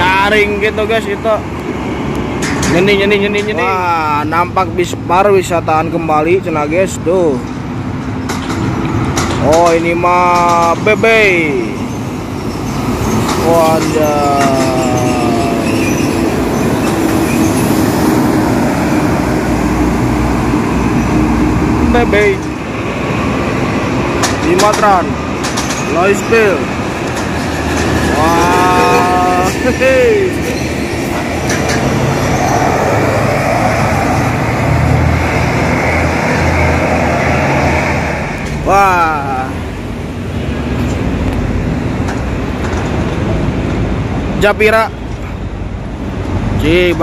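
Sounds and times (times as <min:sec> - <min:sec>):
bus engine and road rumble: 0:00.0 - 0:47.0
multi-tone bus horn: 0:28.3 - 0:29.6.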